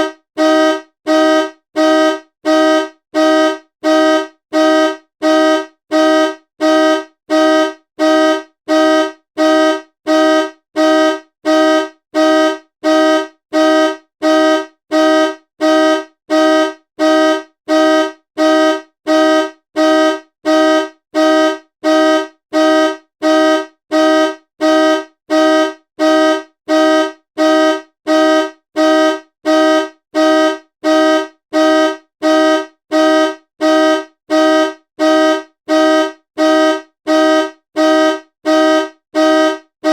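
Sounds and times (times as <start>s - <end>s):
car horn honking: 0.0s - 39.9s.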